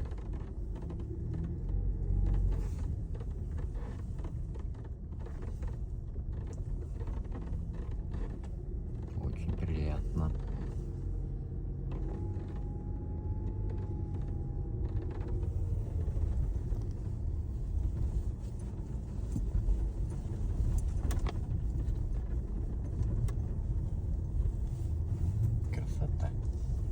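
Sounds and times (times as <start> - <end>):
road rumble inside car: 0.0 - 26.9.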